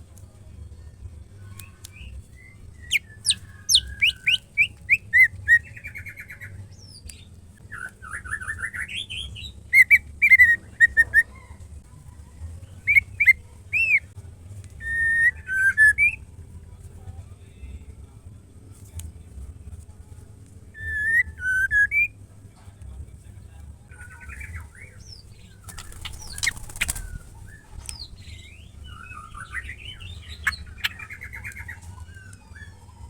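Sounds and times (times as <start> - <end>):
bird whistles and trills: 1.6 - 11.6, 12.8 - 14.1, 14.8 - 16.2, 20.8 - 22.2, 23.9 - 33.0.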